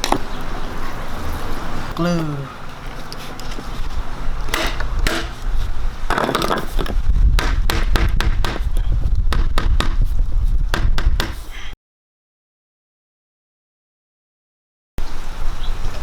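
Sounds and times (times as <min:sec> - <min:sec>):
sharp clicks and knocks: 0:04.5 - 0:05.5, 0:06.1 - 0:10.0.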